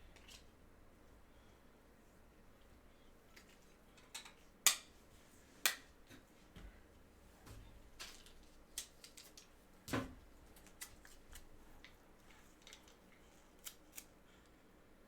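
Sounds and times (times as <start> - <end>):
trading cards and holders handled: 8.0 - 9.6, 10.5 - 14.6.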